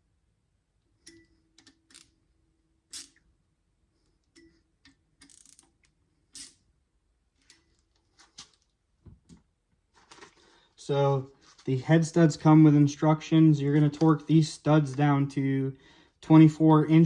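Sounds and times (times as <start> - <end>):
metal tools clicking and clinking: 2.9 - 3.2.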